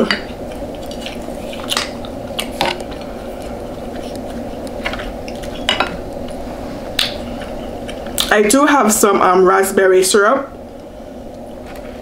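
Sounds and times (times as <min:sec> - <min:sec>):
steady background hum: 0:00.0 - 0:12.0.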